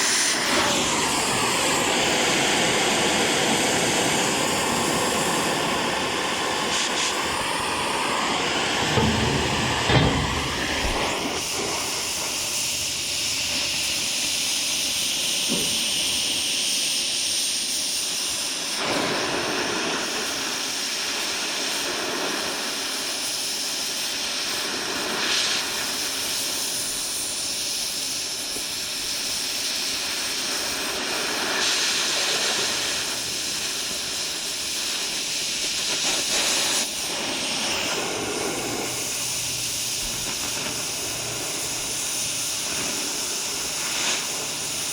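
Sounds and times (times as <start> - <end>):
welding arc crackling: 32.7 - 44.9.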